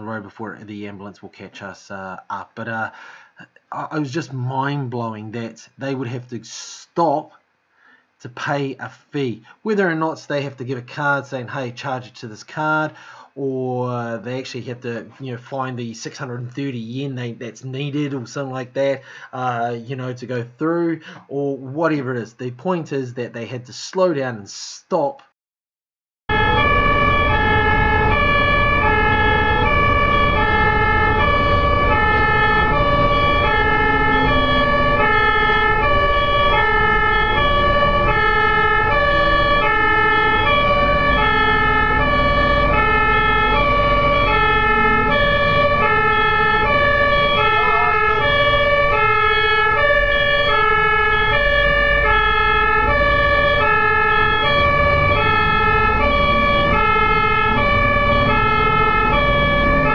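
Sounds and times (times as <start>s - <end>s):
ambulance siren two-tone: 26.3s - 59.9s
engine and road rumble: 26.3s - 59.9s.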